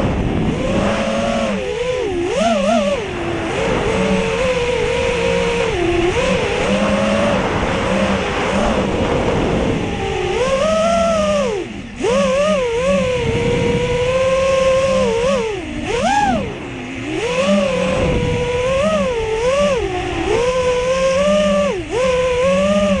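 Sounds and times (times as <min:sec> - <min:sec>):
quadcopter motors whining: 0:00.0 - 0:23.0
wind noise rumble: 0:00.0 - 0:23.0.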